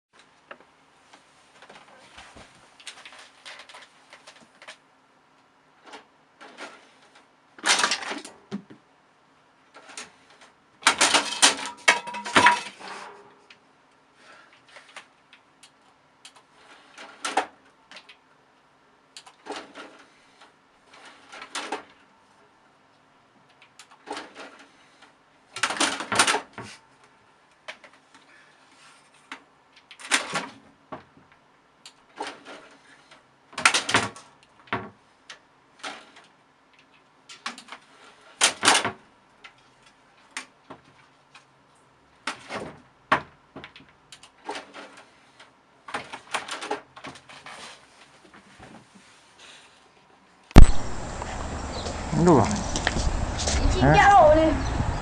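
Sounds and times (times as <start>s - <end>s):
clicks knocks and clatters: 10.8s - 12.8s.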